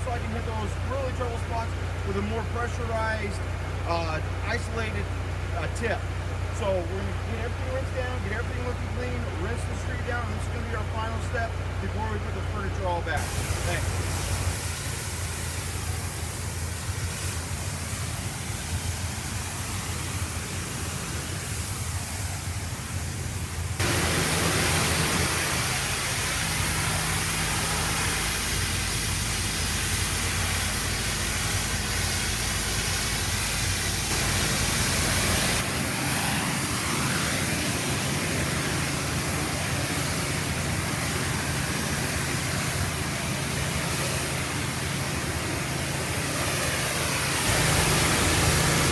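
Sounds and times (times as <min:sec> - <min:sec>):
pressure washer engine hum: 0:00.0 - 0:48.9
pressure washer spraying pavement: 0:00.0 - 0:48.9.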